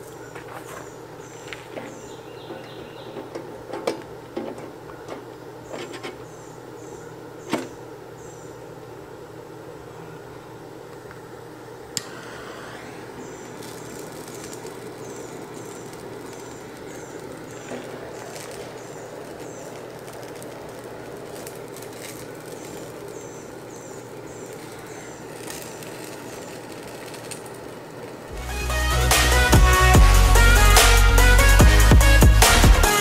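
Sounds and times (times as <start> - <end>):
steady background noise: 0.0 - 33.0
electronic music: 28.3 - 33.0.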